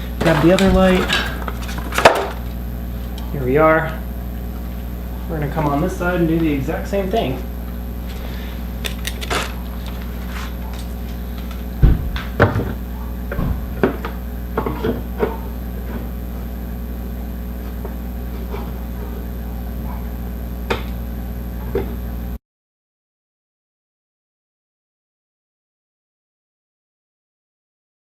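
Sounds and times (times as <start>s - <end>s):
steady low hum: 0.0s - 22.4s.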